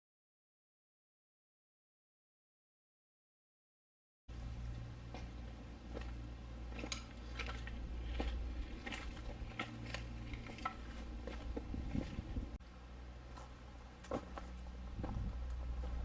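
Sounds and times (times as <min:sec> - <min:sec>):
low rumble: 0:04.3 - 0:16.0
footsteps crunching on dirt: 0:04.6 - 0:12.6, 0:13.2 - 0:16.0.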